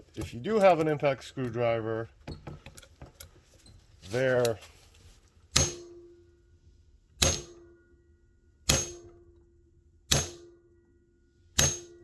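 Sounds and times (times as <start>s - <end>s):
hammer striking metal screwdriver: 11.6s - 11.9s.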